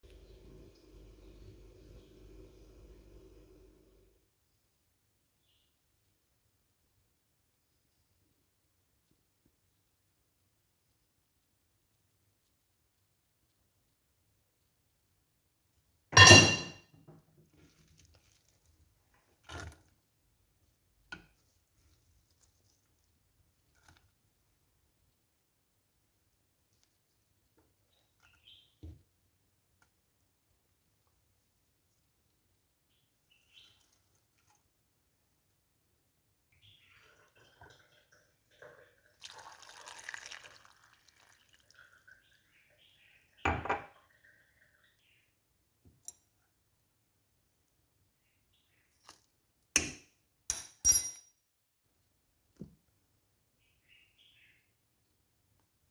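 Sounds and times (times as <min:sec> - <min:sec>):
kitchenware clink: 0:16.2 - 0:16.9, 0:49.8 - 0:51.4
liquid being poured: 0:37.0 - 0:42.4.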